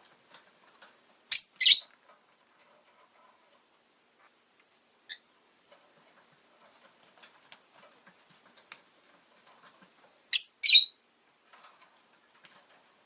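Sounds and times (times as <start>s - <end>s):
lovebird high chirps: 1.3s - 1.9s, 10.3s - 11.0s
faint soft clicks and taps: 1.8s - 4.8s, 5.6s - 10.2s.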